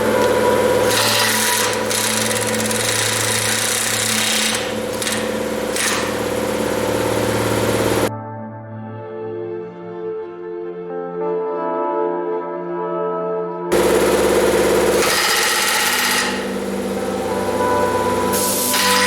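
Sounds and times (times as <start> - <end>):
power tool running under load: 0.0 - 8.1, 13.7 - 19.0.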